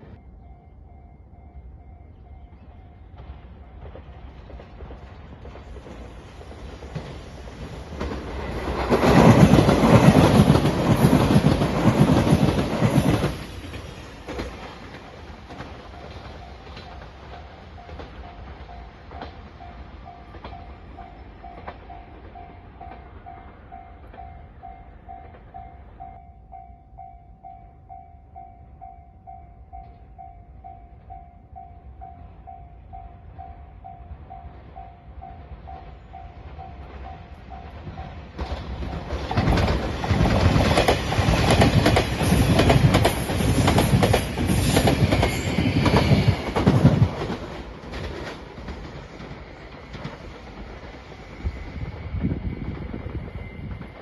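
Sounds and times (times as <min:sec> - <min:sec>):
electric train passing: 0:00.0 - 0:54.0
train wheels clacking: 0:03.0 - 0:26.7, 0:34.4 - 0:54.0.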